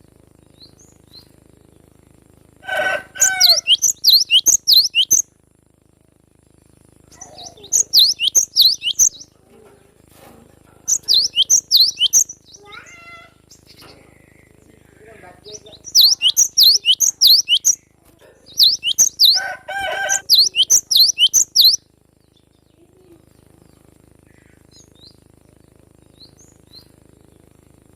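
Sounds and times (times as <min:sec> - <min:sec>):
harsh buzzy bird call: 0:02.6 - 0:05.2, 0:07.1 - 0:09.4, 0:10.9 - 0:21.8
bird chirping: 0:02.7 - 0:05.3, 0:07.1 - 0:09.4, 0:10.8 - 0:23.9.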